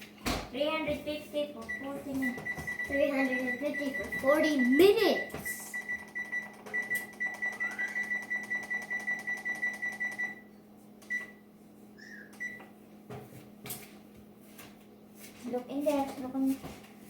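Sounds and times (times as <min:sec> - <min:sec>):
oven control panel beeps: 0:01.7 - 0:10.4, 0:11.0 - 0:11.4, 0:12.0 - 0:12.7.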